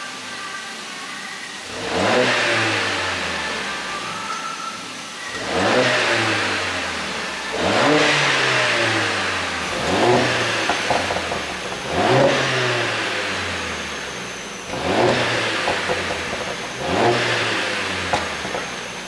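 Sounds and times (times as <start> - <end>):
car engine revving: 1.7 - 4.0, 5.3 - 19.0
exhaust pops: 7.6 - 19.0.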